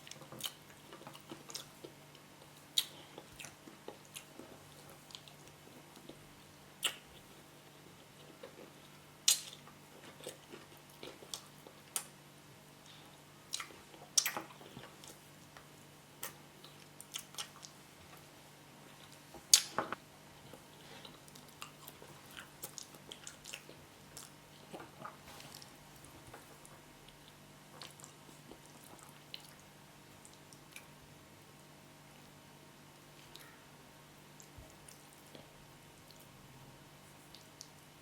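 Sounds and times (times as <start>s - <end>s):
person chewing food: 0.0s - 12.1s, 12.8s - 30.9s.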